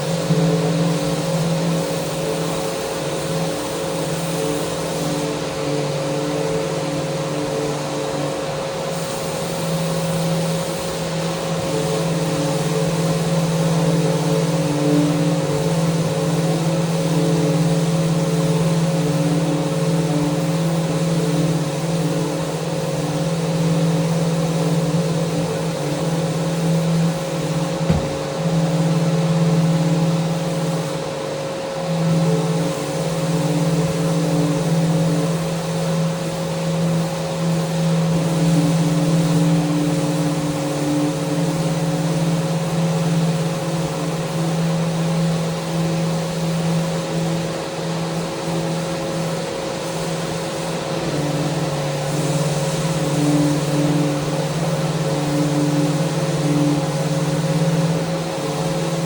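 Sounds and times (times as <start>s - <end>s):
sharp knock: 27.9s - 28.4s.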